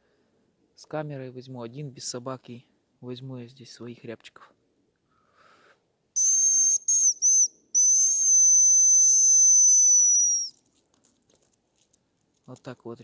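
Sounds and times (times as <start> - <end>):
whistled bird call: 6.2 - 10.5.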